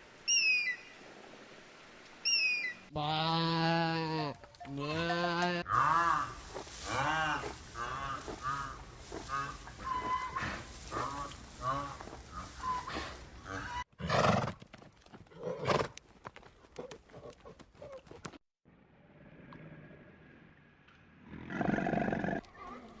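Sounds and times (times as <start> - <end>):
horse snorting: 5.7 - 14.5.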